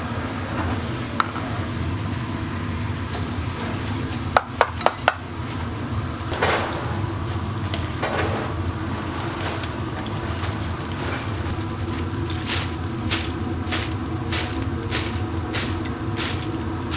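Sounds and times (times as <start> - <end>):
steady low hum: 0.0 - 16.9
kitchen utensils knocking: 4.2 - 5.4, 6.0 - 11.6.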